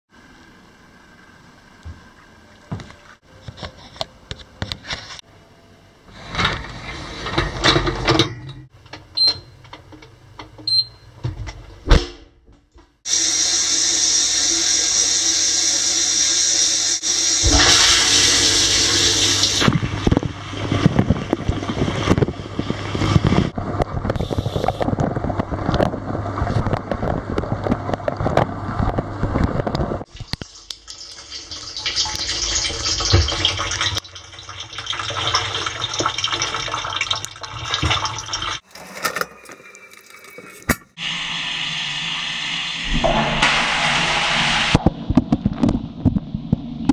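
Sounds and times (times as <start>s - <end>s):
dishwasher low hum: 0.2s - 13.0s, 37.6s - 46.9s
water rushing in dishwasher: 13.1s - 45.8s.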